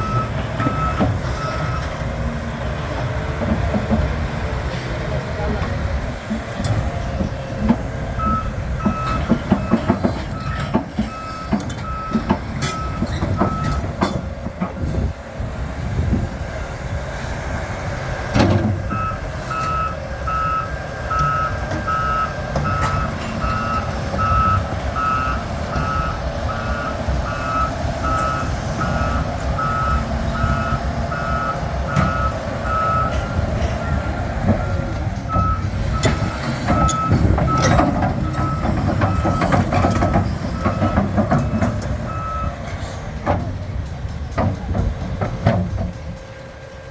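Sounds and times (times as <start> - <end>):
excavator running heavily: 0.0 - 46.9
travel alarm beeping: 8.2 - 13.8
metal clanks: 33.0 - 46.3.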